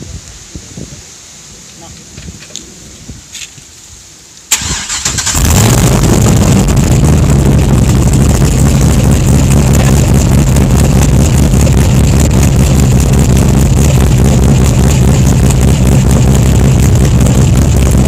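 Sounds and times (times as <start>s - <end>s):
starter motor cranking: 4.5s - 6.5s
car engine idling loudly: 4.6s - 18.0s.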